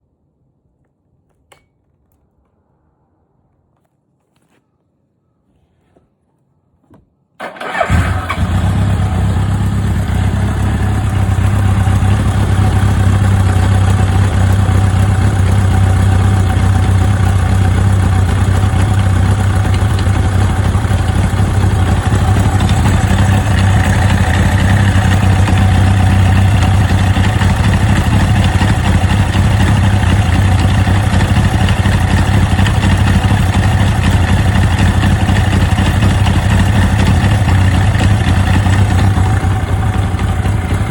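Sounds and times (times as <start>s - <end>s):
motorcycle engine starting and idling: 6.8s - 40.9s.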